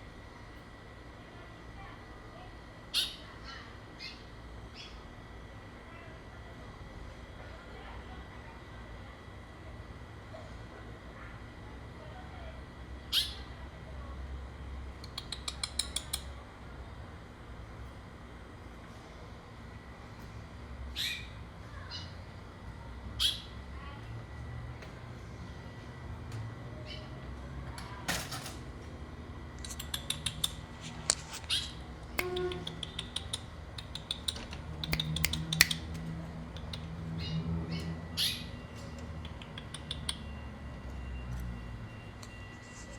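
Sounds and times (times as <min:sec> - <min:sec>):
songbird calling: 0:13.1 - 0:13.4, 0:23.2 - 0:23.5, 0:37.2 - 0:40.3
bird clicking: 0:15.0 - 0:16.3, 0:29.6 - 0:36.9, 0:39.2 - 0:40.3.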